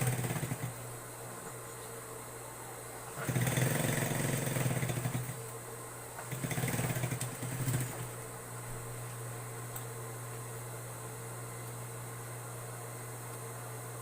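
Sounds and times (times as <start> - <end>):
sewing machine stitching: 0.0 - 0.7, 3.2 - 5.4, 6.2 - 8.1
sewing machine motor humming: 0.0 - 0.8, 3.1 - 5.5, 6.2 - 8.2.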